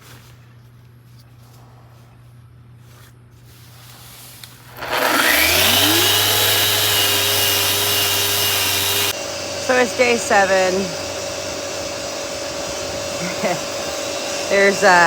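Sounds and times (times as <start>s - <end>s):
electric sander whine: 4.7s - 15.0s.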